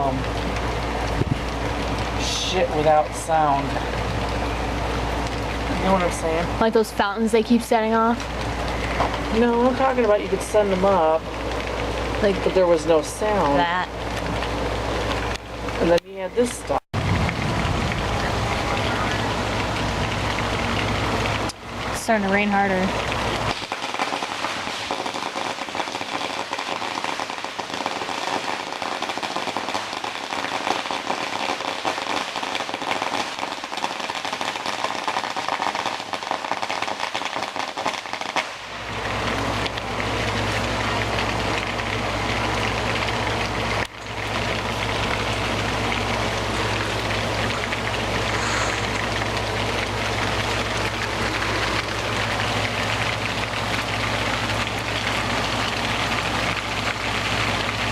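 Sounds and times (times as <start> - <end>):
heavy rain falling: 0.0 - 57.9
steady low hum: 38.5 - 57.9.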